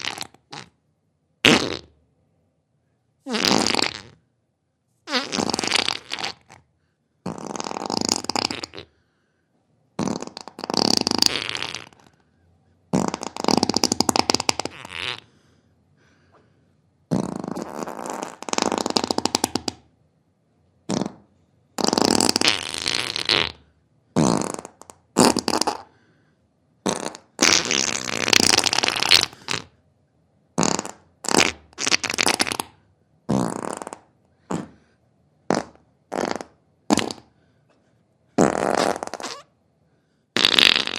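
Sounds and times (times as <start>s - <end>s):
fart sounds: 0.0s - 0.8s, 1.4s - 2.0s, 3.2s - 4.2s, 5.0s - 9.0s, 10.0s - 12.2s, 12.9s - 15.3s, 17.1s - 19.9s, 20.8s - 25.9s, 26.8s - 29.8s, 30.6s - 37.4s, 38.4s - 39.6s, 40.4s - 40.9s.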